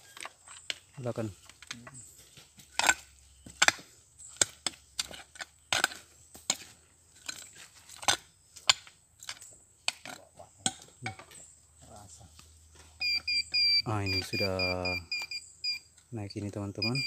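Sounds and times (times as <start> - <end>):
digging tool striking ground: 2.2 - 11.4.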